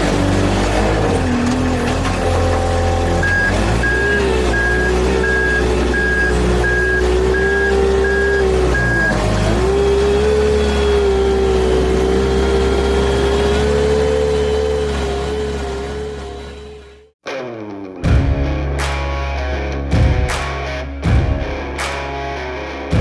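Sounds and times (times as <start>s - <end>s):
diesel engine running with whine: 0.0s - 17.1s
backup alarm beeping: 3.2s - 9.3s.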